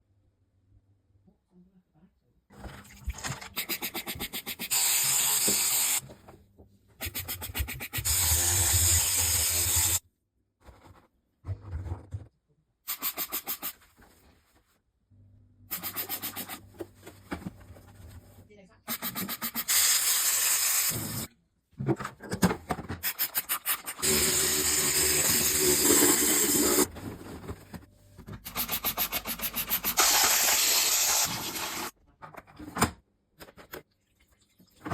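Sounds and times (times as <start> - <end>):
hand scrubbing washing machine: 23.0 - 27.0.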